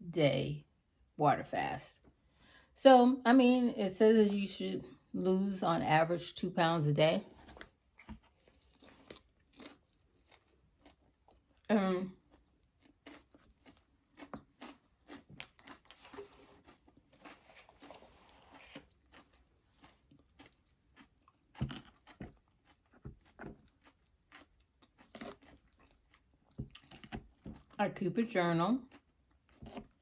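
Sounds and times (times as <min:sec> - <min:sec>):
chewing crisp vegetables: 0:07.6 - 0:30.0.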